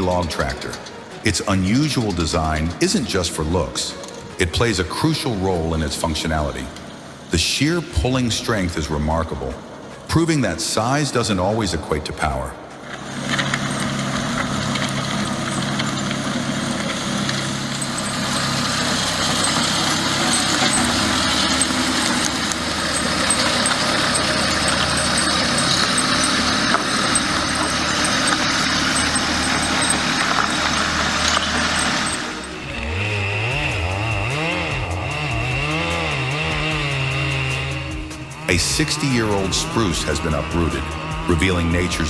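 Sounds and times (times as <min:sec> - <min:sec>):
tractor engine running: 0:00.0 - 0:10.6, 0:11.5 - 0:42.0
mechanical clatter: 0:12.9 - 0:36.6.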